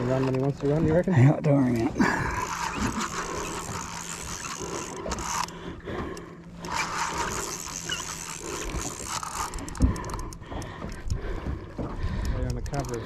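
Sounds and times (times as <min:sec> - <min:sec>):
fishing reel drag buzzing: 0:02.2 - 0:10.4.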